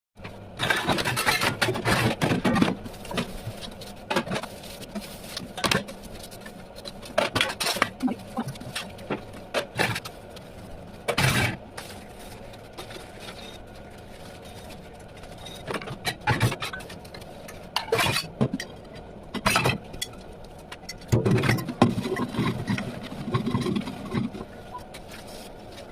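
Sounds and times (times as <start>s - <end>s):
dishes clattering and scraping: 15.3s - 24.5s.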